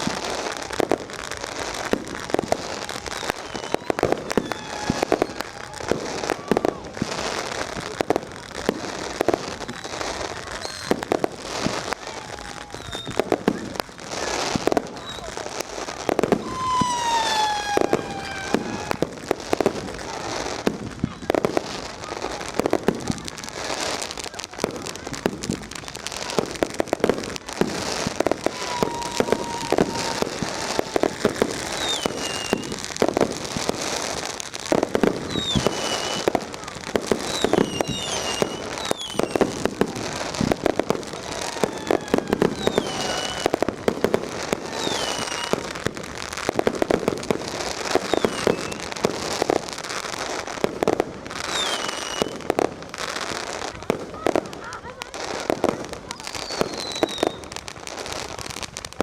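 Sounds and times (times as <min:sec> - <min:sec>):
fireworks and firecrackers banging: 0:00.0 - 0:59.0
falling firework whistles: 0:01.5 - 0:07.8, 0:09.0 - 0:21.6, 0:27.6 - 0:50.4, 0:51.4 - 0:52.6, 0:56.1 - 0:57.6.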